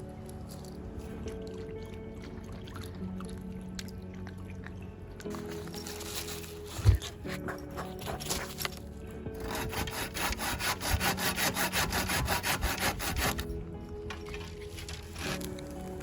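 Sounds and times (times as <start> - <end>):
hand saw cutting wood: 5.9 - 8.8, 9.4 - 13.5, 14.7 - 15.6.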